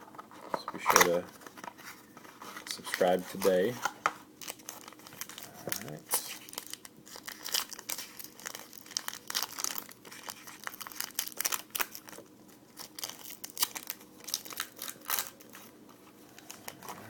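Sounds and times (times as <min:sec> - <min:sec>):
wrapper being torn and crinkled: 0:04.4 - 0:15.7.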